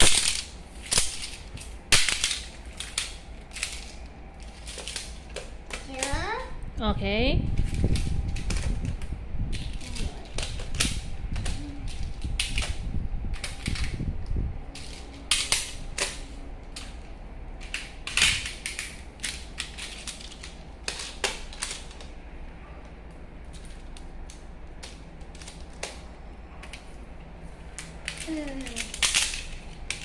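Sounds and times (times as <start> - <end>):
plastic tiles clicking together: 0.0 - 6.2, 16.8 - 22.1, 27.7 - 30.0.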